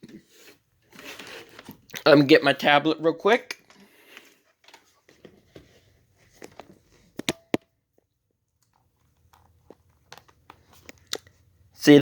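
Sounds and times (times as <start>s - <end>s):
tablet and cable clicks and knocks: 6.4s - 8.0s, 8.6s - 11.4s.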